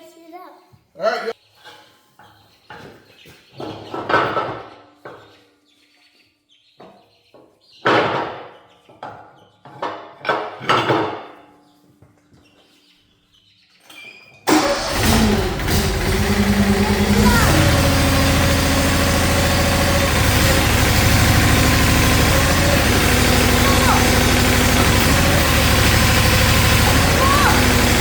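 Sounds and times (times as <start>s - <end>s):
gasoline engine starting and running: 14.5s - 28.0s.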